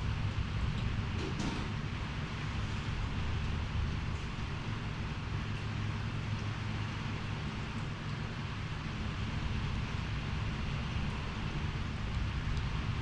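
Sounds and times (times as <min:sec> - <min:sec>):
low wind rumble: 0:00.0 - 0:13.0
rain hiss: 0:00.0 - 0:13.0.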